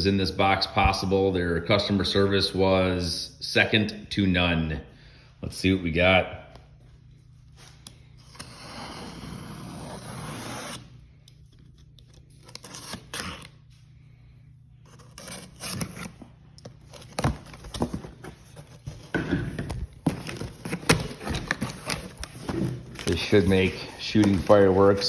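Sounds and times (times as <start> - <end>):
cardboard scraping and rustling: 14.9 - 25.0.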